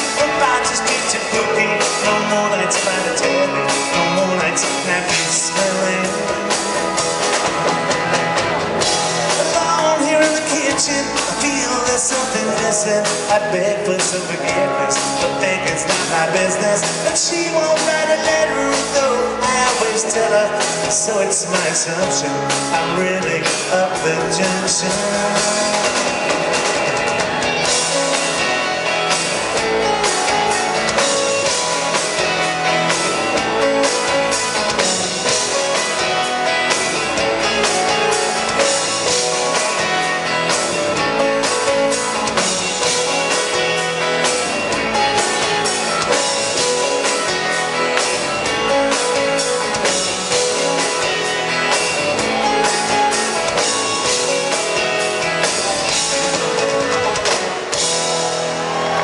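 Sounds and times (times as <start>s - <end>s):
drum kit: 0.0s - 59.0s
strummed guitars: 0.0s - 59.0s.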